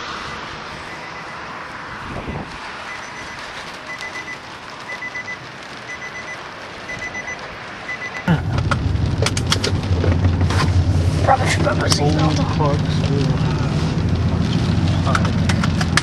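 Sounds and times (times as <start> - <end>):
vehicle and wind noise: 0.0 - 16.0
seatbelt warning chime beeping: 2.9 - 8.3.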